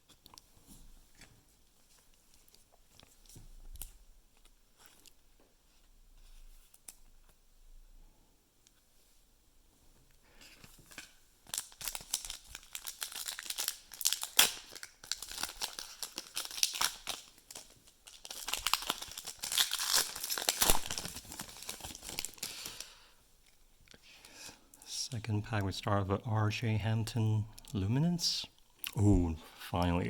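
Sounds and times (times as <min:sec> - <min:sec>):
foil wrapper tearing and crinkling: 0:11.0 - 0:22.9.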